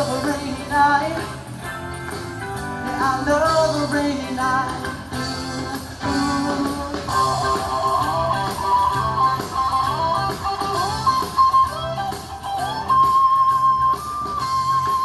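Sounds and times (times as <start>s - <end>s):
bass guitar: 0.0s - 15.0s
electric guitar lead melody: 0.0s - 15.0s.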